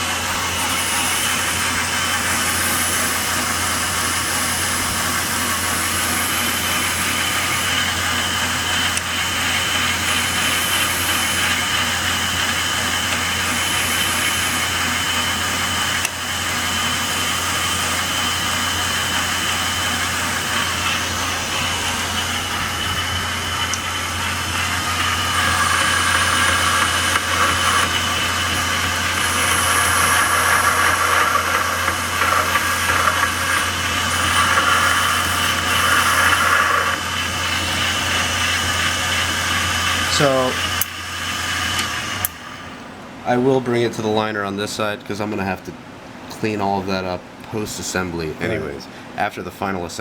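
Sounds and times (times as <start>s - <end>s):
electric grinder grinding metal: 0.0s - 42.5s.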